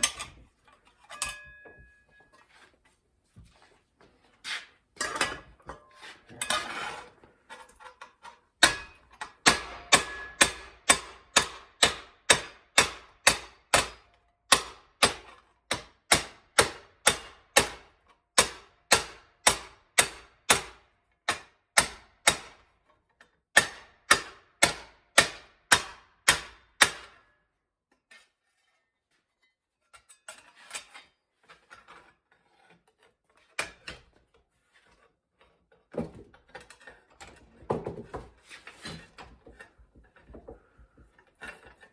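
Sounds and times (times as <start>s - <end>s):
hammer striking sheet steel: 8.6s - 22.6s, 23.6s - 27.2s.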